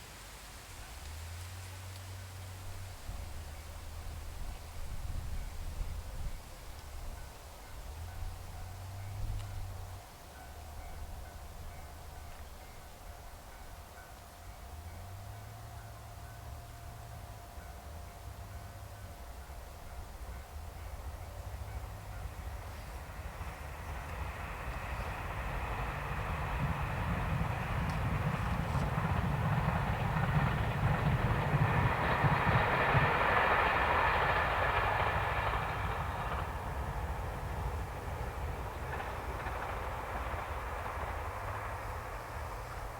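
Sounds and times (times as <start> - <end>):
diesel train passing: 0.0 - 42.9.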